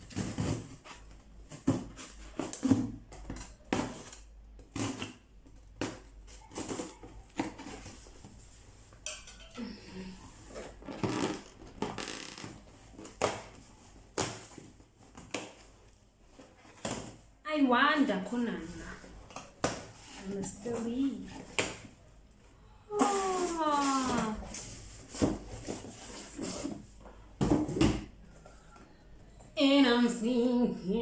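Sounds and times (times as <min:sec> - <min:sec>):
household items clattering: 0:09.0 - 0:12.6.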